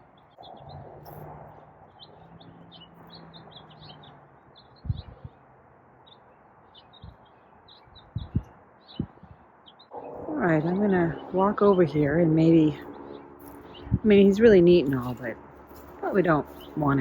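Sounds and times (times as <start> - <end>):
small birds chirping: 0.0 - 17.0
steady low hum: 8.0 - 17.0.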